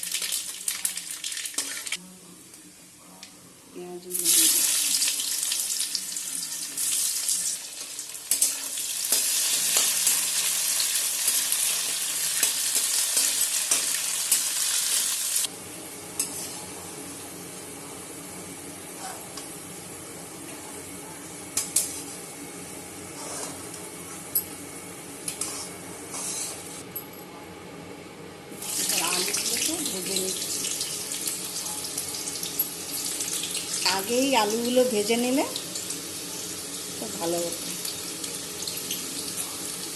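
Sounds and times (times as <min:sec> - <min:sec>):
onions sizzling in oil: 0:04.1 - 0:24.0, 0:28.6 - 0:39.9
spatula scraping pan: 0:23.1 - 0:23.7, 0:25.3 - 0:26.8.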